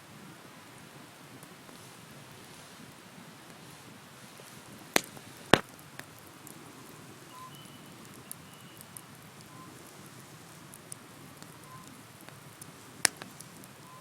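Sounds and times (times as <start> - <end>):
bonfire crackling and popping: 0.0 - 14.0
soft steady hiss: 0.0 - 14.0.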